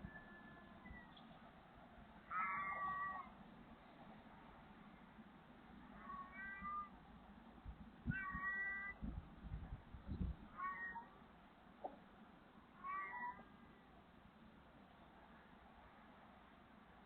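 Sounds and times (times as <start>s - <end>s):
cat meowing: 2.3s - 3.3s, 6.0s - 6.9s, 8.1s - 9.0s, 10.6s - 11.1s, 12.8s - 13.5s.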